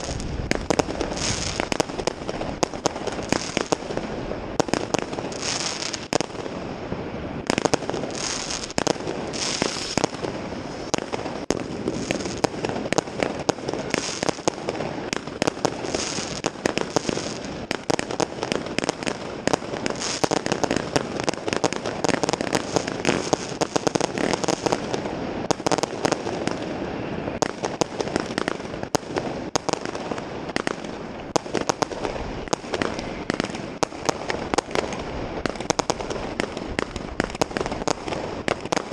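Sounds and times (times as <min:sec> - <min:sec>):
fireworks cracks and bangs: 0:00.0 - 0:38.9
fireworks hissing: 0:00.0 - 0:38.9.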